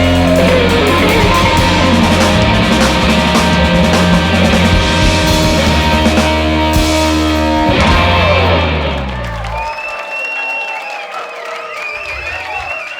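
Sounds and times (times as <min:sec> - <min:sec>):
blues-rock band playing: 0:00.0 - 0:09.6
audience applauding: 0:07.4 - 0:12.9
audience whistling: 0:07.8 - 0:12.9.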